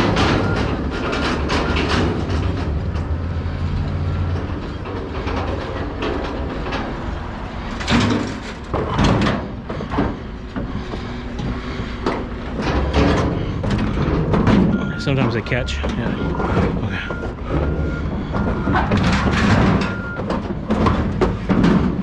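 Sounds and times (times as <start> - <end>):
heavy scrap clanking: 5.0 - 10.2, 18.5 - 20.1.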